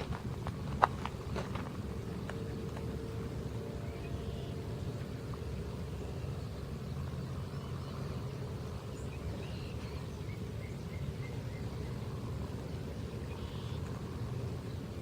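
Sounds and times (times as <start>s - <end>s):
low outdoor rumble: 0.0s - 15.0s
faint bird chirps: 3.8s - 4.7s, 13.0s - 14.0s.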